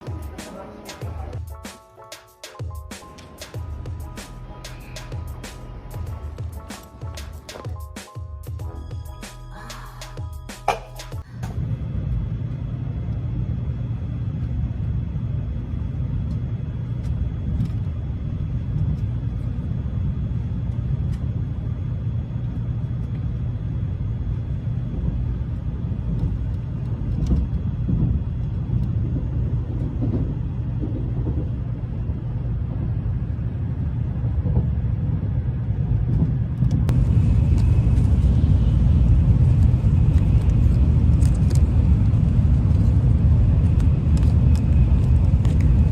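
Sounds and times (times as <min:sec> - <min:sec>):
vehicle rumble: 0:03.0 - 0:07.9, 0:08.5 - 0:45.9.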